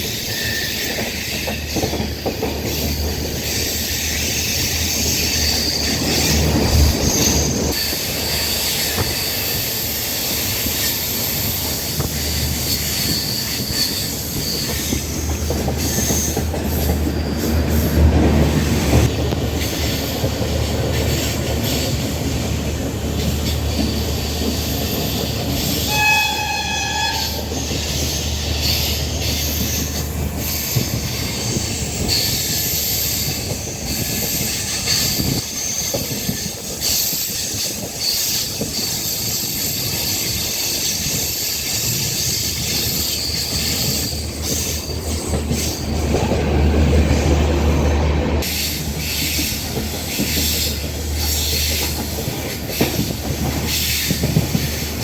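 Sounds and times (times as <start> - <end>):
high wheel squeal: 0.0 - 2.0, 2.7 - 18.0, 23.2 - 46.2
train wheels rumbling on rails: 0.0 - 55.0
train horn: 25.8 - 27.5.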